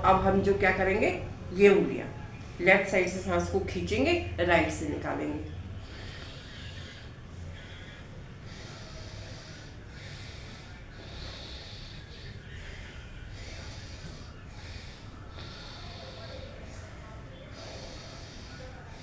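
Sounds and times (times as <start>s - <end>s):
low steady hum: 0.0s - 19.0s
woman breathing through nose: 5.5s - 19.0s.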